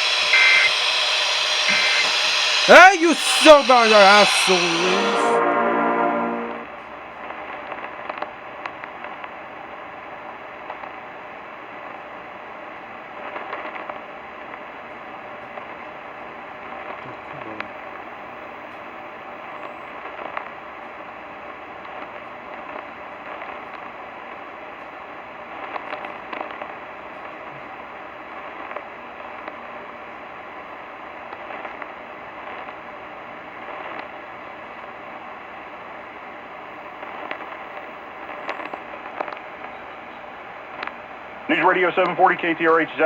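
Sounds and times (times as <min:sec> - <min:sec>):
radio static hiss: 0:00.0 - 0:05.4.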